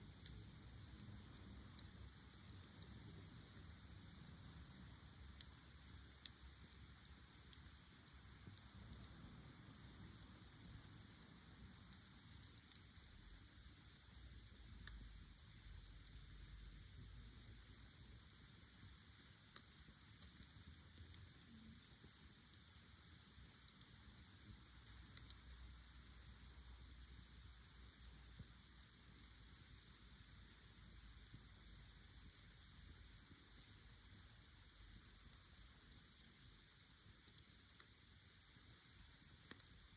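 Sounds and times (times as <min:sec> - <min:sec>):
crickets chirring: 0:00.0 - 0:39.9
faint clicks: 0:25.1 - 0:25.4, 0:39.4 - 0:39.7.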